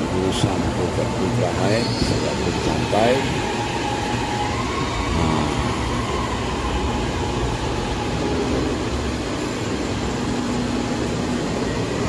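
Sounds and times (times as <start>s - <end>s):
train rumble with faint whine: 0.0s - 12.0s.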